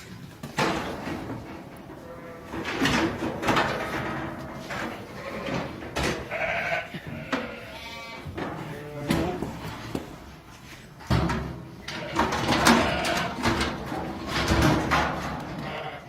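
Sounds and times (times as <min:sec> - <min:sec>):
sheep bleating: 0:06.3 - 0:09.1, 0:15.6 - 0:16.0.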